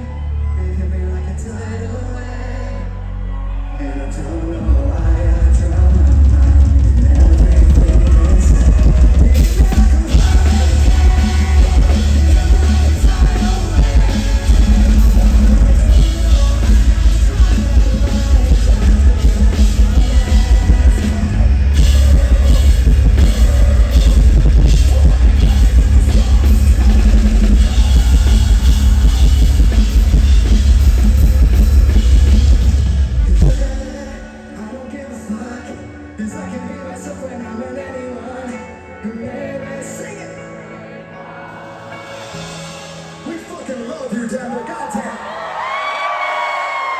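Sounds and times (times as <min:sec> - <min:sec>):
metalcore band playing live: 0:04.7 - 0:34.6, 0:41.7 - 0:44.6
pounding drum kit: 0:04.8 - 0:34.6.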